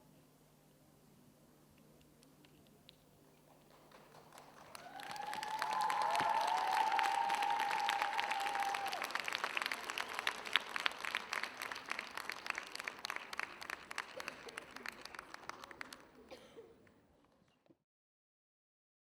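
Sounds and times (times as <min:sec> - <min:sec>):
audience applauding: 0:03.4 - 0:16.5.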